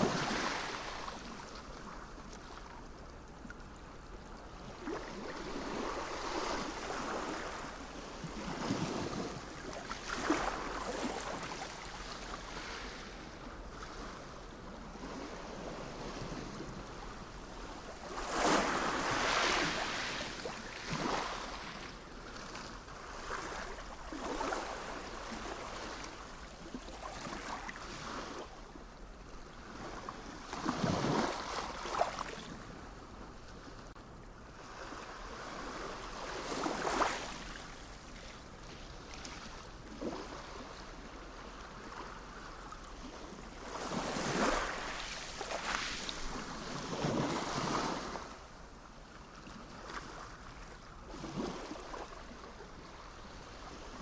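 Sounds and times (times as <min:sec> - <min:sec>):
sea waves washing in: 0:04.8 - 0:28.7, 0:43.7 - 0:48.5.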